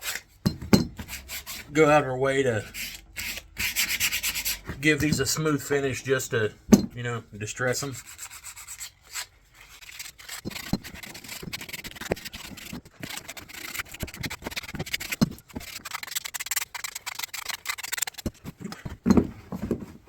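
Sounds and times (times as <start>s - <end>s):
sandpaper rasping on wood: 1.0s - 1.7s, 2.6s - 4.6s, 7.8s - 18.4s.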